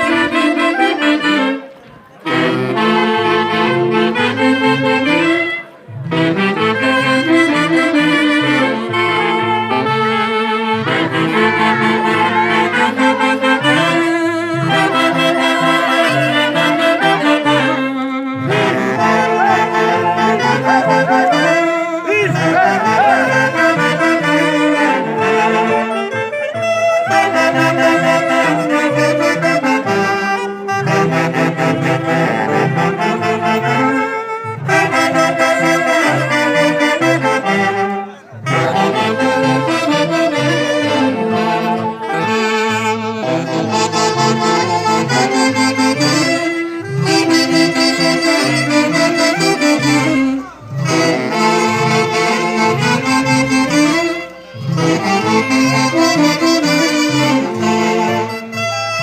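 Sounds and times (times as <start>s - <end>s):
saxophones playing melody: 0.0s - 59.0s
bass line: 18.4s - 25.8s.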